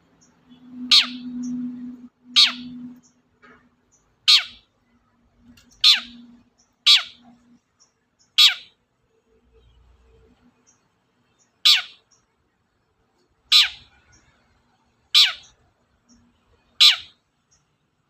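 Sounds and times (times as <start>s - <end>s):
shrike harsh downward calls: 0.7s - 3.0s.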